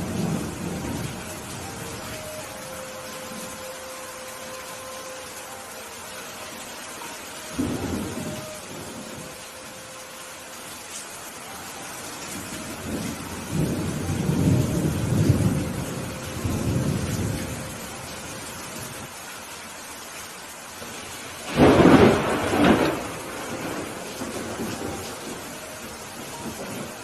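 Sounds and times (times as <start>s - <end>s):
low rolling thunder: 0.0s - 2.6s, 7.5s - 9.4s, 12.3s - 19.1s, 20.8s - 27.0s
steady rain: 0.0s - 27.0s
sharp thunderclap: 21.5s - 24.6s.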